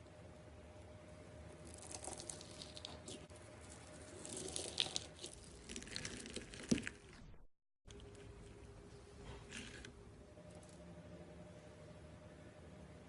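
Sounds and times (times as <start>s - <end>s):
slime squeezed with crackles: 1.6s - 3.3s, 4.0s - 7.2s.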